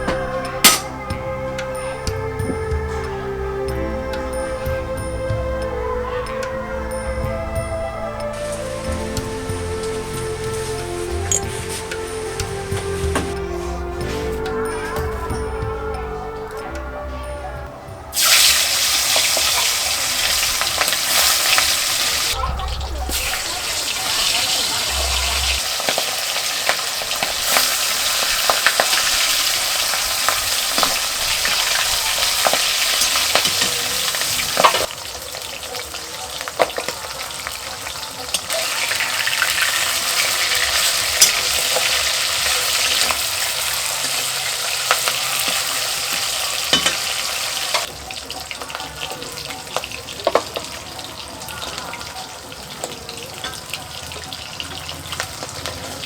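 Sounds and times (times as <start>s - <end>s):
food frying in hot oil: 18.1s - 22.4s, 23.1s - 56.0s.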